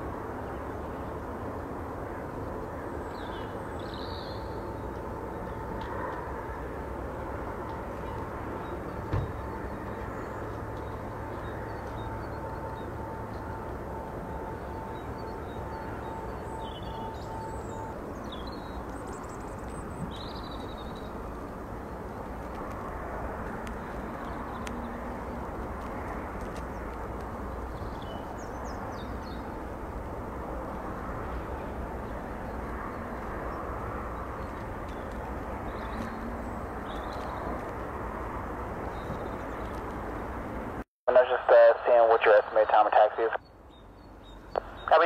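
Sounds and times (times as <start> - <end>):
small birds chirping: 14.9 - 22.2, 31.4 - 37.7, 43.4 - 45.0
jet aircraft engine rumble: 44.6 - 45.0.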